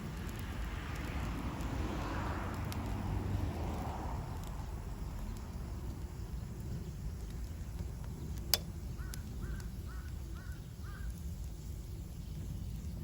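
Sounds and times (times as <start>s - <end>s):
low outdoor rumble: 0.0s - 13.0s
crow cawing: 9.0s - 11.1s.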